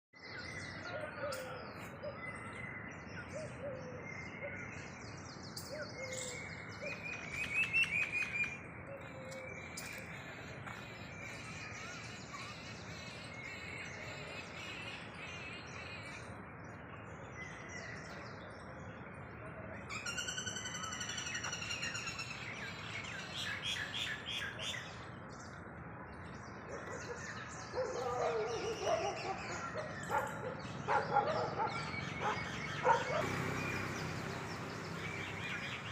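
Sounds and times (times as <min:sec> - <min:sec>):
small birds chirping: 0:19.9 - 0:35.9.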